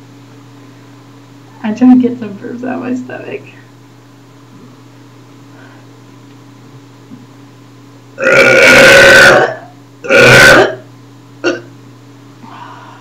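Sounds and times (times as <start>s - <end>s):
person burping loudly: 8.2s - 10.8s, 11.4s - 11.7s.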